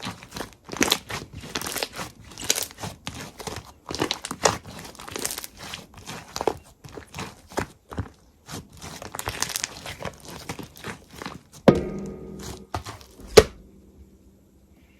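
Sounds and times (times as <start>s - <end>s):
crunchy slime crackling: 0.0s - 13.6s
sharp knock with ringing: 11.7s - 13.6s.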